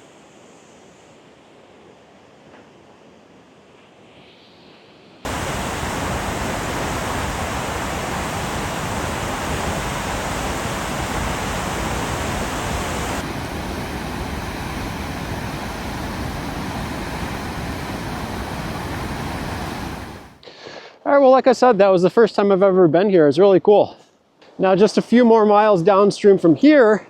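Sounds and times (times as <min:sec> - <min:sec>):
roar of falling water: 0:05.3 - 0:20.4.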